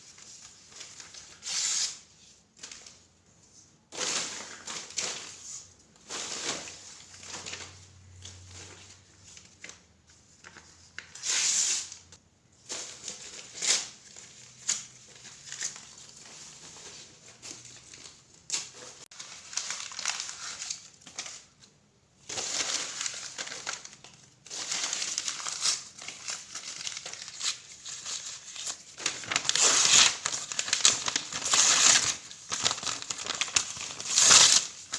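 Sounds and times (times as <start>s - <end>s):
paper crinkling: 12.7s - 21.6s, 22.4s - 34.9s
paper ripping: 26.8s - 34.9s.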